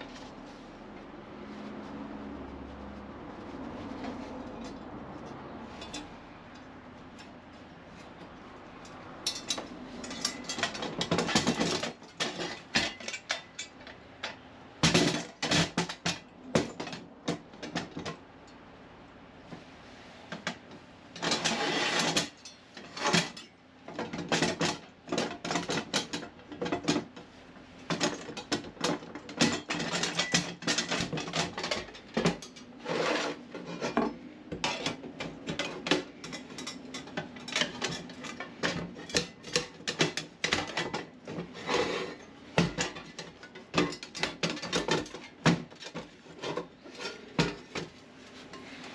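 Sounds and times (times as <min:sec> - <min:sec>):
steel plates scraping: 0:21.2 - 0:23.5, 0:28.0 - 0:48.9.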